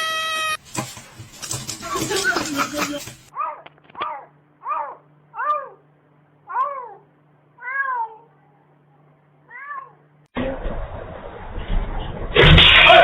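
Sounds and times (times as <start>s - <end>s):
cat meowing: 0.0s - 0.6s, 7.6s - 8.3s, 9.5s - 10.0s.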